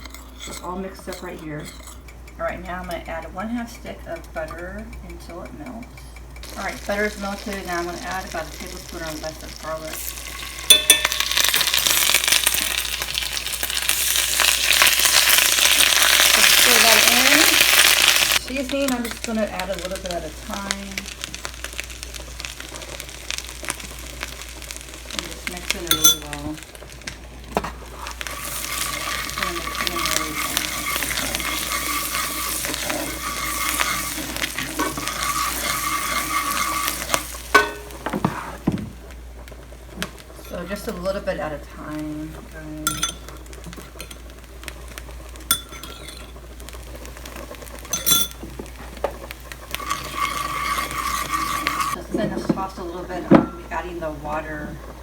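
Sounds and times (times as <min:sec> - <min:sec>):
utensil scraping a pan: 0:00.0 - 0:04.0, 0:25.2 - 0:38.8, 0:47.3 - 0:54.2
garlic sizzling in butter: 0:06.2 - 0:55.0
ringing metal clink: 0:10.7 - 0:11.2, 0:47.9 - 0:48.4.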